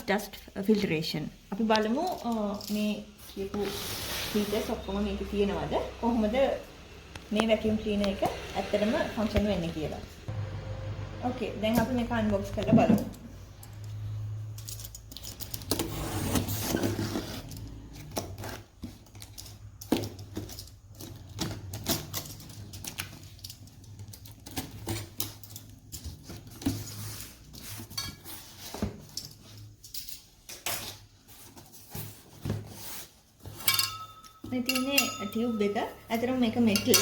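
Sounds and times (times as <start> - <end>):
steady low hum: 5.4 - 14.8.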